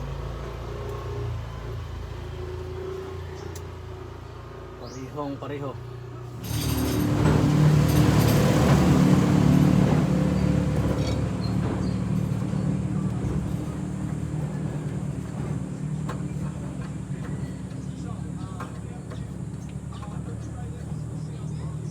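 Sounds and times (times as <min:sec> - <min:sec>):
engine running: 0:00.0 - 0:21.9.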